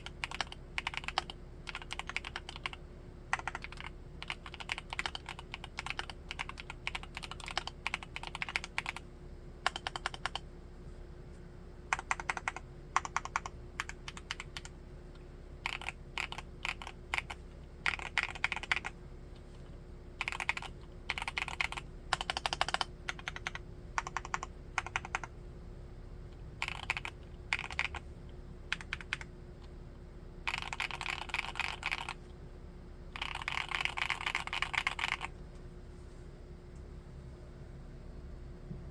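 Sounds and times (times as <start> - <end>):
mechanical keyboard typing: 0.0 - 9.0, 9.6 - 10.4, 11.9 - 14.7, 15.6 - 19.0, 20.2 - 25.3, 26.6 - 28.0, 28.7 - 29.3, 30.5 - 32.2, 33.2 - 35.3.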